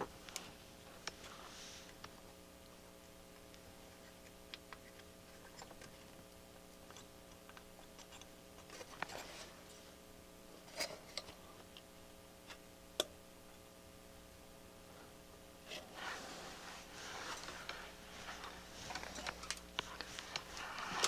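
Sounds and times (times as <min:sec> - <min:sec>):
faint electrical hum: 0:00.0 - 0:21.0
small clicks and taps of tools: 0:11.2 - 0:13.6.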